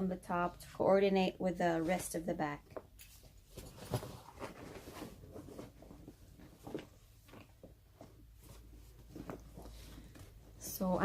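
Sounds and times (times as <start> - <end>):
fabric bag rustling: 3.2 - 10.6.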